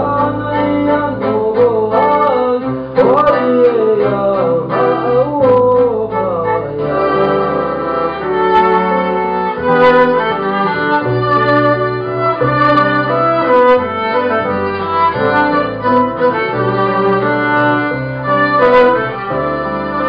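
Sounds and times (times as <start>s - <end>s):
live band playing instrumental: 6.8s - 20.0s.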